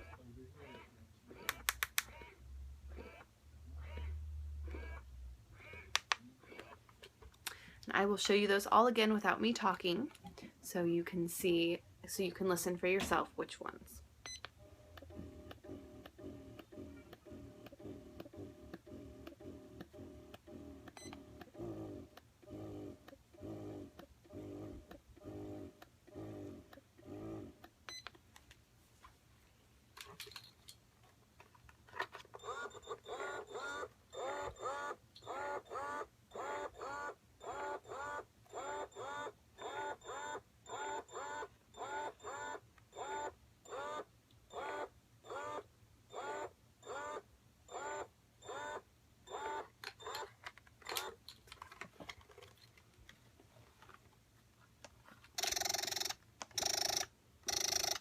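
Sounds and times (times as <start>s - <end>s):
breast pump motor pulsing: 2.9s - 5.0s, 14.6s - 27.7s, 32.4s - 50.2s, 55.4s - 58.0s.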